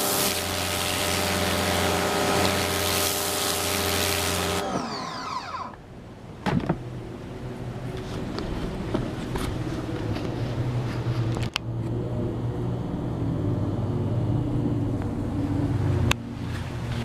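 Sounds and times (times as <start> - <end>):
water spray hissing: 0.0 - 4.6
pressure washer motor humming: 0.0 - 5.8.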